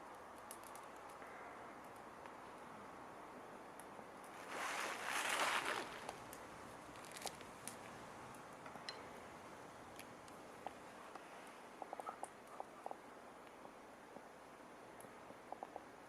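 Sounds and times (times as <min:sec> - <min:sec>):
wood fire crackling and popping: 0:00.0 - 0:01.2, 0:03.8 - 0:12.6.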